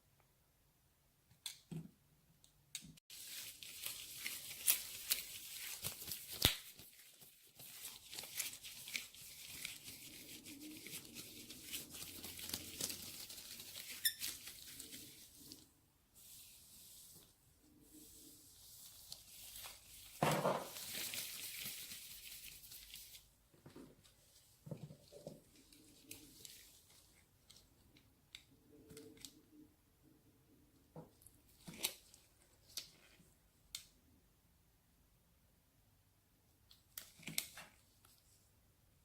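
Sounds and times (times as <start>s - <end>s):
crinkly handling noise: 3.1s - 29.6s, 31.1s - 33.4s, 36.7s - 38.5s.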